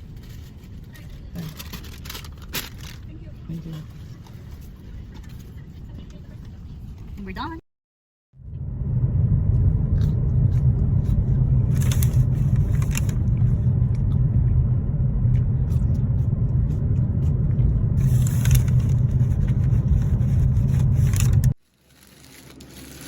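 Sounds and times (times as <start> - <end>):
car cabin rumble: 8.4 - 21.6.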